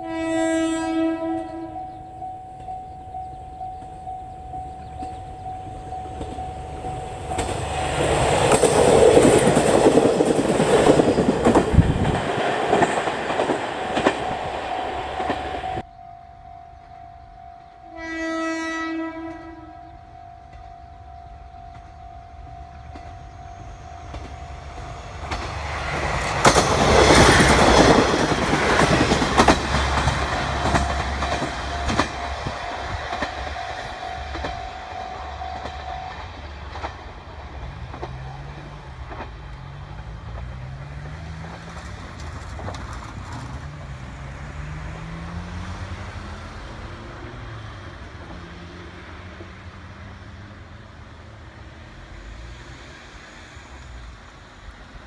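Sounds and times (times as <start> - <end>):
level crossing bell ringing: 1.7 - 7.8
train wheels clattering over rail joints: 6.1 - 15.8, 24.0 - 44.0
vehicle engine accelerating: 39.6 - 50.6.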